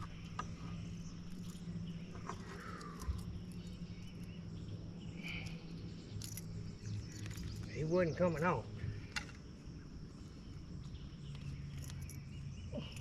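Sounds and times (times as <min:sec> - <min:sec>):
faint chirping: 0:00.0 - 0:13.0
steady low hum: 0:00.0 - 0:13.0
small clicks and knocks: 0:09.1 - 0:09.4.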